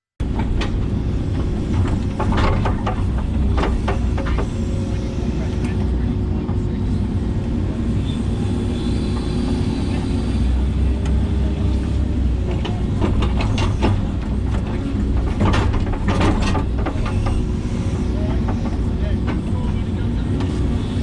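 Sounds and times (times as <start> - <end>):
excavator diesel engine running: 0.2 - 21.0
digging clanks and scrapes: 1.4 - 5.1, 12.4 - 19.6.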